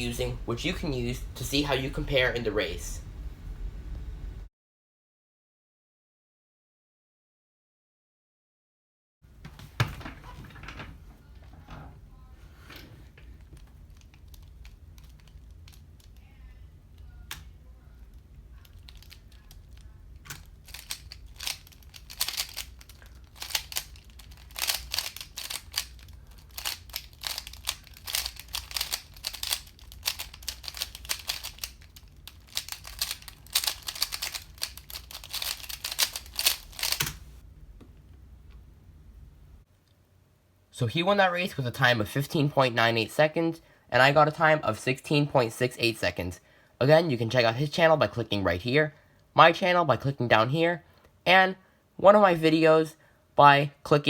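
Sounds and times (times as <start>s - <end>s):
plastic puzzle cube clicking: 18.6s - 37.3s.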